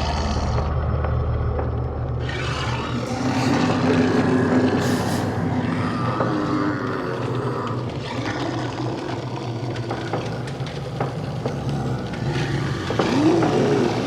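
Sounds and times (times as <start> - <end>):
low droning rumble: 0.0 - 8.0.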